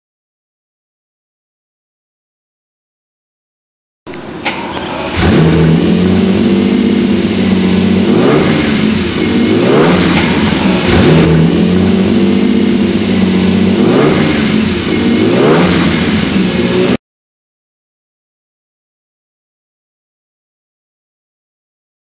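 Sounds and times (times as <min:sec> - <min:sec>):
car engine revving: 0:04.1 - 0:17.0.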